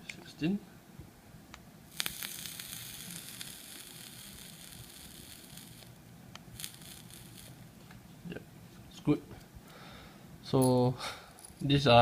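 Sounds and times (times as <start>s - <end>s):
vape coil sizzling: 1.9s - 7.8s.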